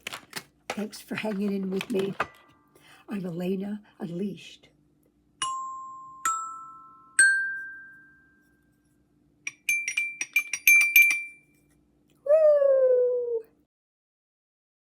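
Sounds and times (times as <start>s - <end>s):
chime jingle: 5.4s - 8.6s.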